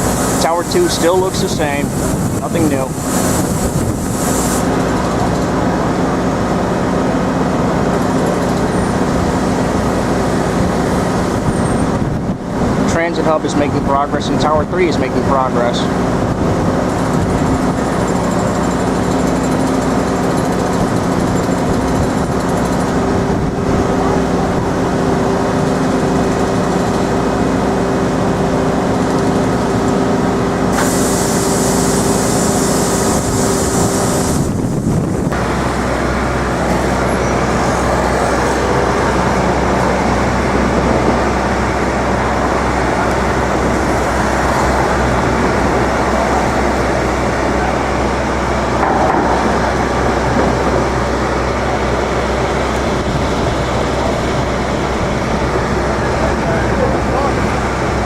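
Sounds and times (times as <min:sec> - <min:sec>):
loud hiss: 0:00.0 - 0:04.8, 0:30.7 - 0:39.0
city street traffic: 0:00.0 - 0:58.0
heavy vehicle engine hum: 0:00.0 - 0:58.0
low engine hum: 0:15.9 - 0:58.0.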